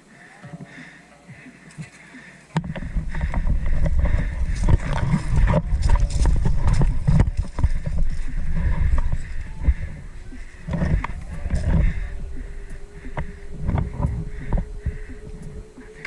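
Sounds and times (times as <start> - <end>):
running footsteps: 0.4 - 16.0
thumping on microphone: 2.6 - 16.0.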